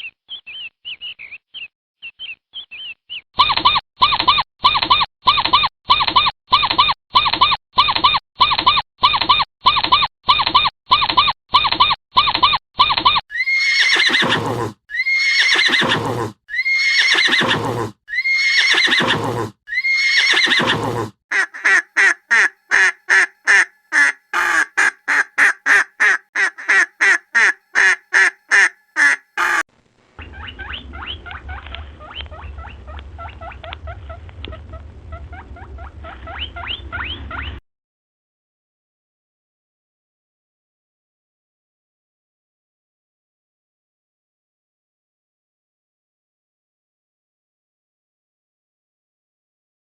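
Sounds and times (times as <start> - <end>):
horse whinnying: 13.3 - 21.2
low hum: 29.8 - 37.6.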